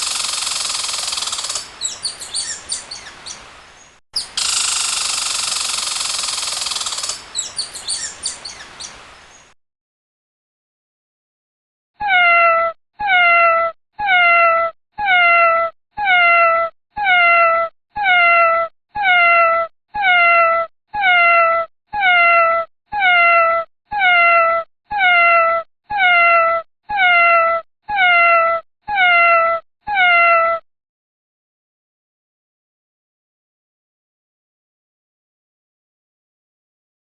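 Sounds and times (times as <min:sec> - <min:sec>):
cat meowing: 0:12.0 - 0:30.6.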